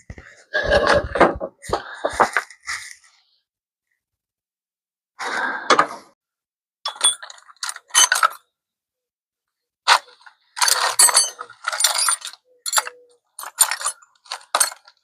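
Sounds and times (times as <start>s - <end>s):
metal tools clinking and clattering: 6.9s - 8.4s, 9.9s - 15.0s.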